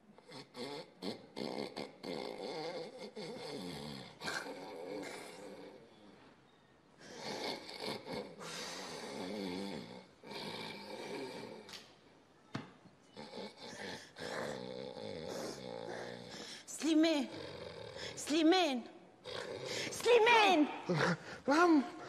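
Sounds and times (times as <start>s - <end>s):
man snoring: 0.2s - 5.8s, 7.1s - 11.7s, 13.2s - 16.6s.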